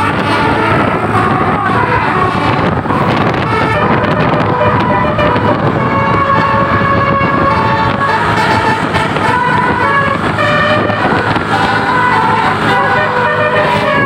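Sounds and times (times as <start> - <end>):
multi-tone musical horn tune: 0.0 - 14.0
steady rumble: 0.0 - 14.0.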